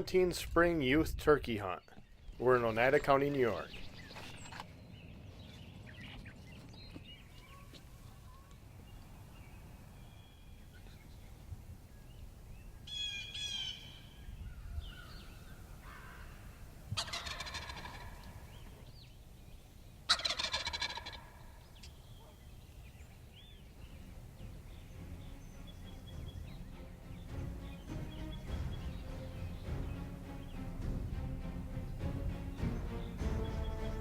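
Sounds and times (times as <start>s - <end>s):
faint bird calls: 12.8s - 30.7s
turkey gobbling: 16.9s - 18.8s, 20.1s - 22.4s.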